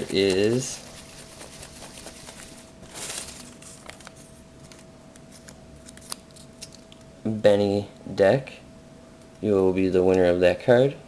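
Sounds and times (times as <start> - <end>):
paper slips rustling: 0.0 - 4.8.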